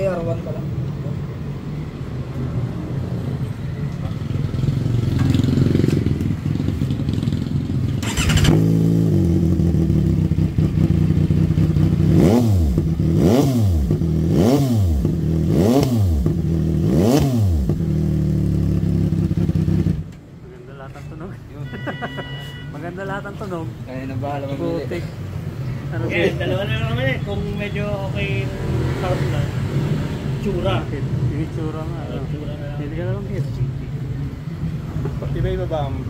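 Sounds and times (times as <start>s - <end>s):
motorcycle engine idling and revving: 2.9s - 20.3s, 27.6s - 36.0s.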